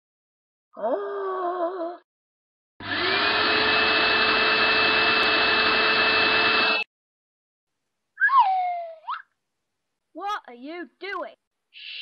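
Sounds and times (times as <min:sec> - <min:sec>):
vacuum cleaner whining: 0:02.8 - 0:06.9.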